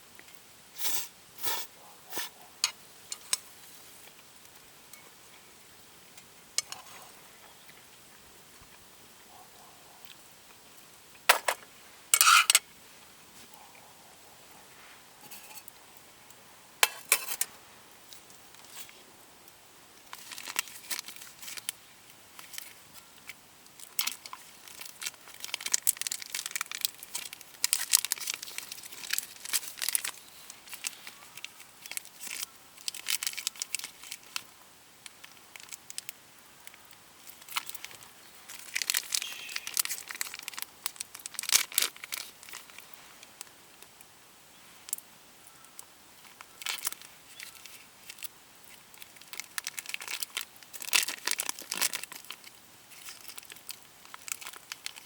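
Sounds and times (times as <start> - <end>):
crinkly plastic crumpling and tearing: 16.8 - 19.0, 20.0 - 43.9, 46.2 - 55.0.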